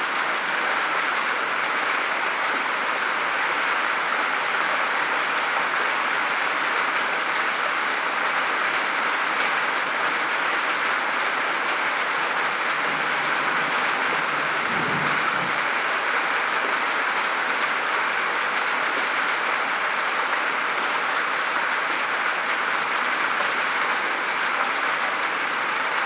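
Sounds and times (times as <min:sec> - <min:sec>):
hail and heavy rain pelting: 0:00.0 - 0:26.0
low rumble: 0:12.7 - 0:15.7.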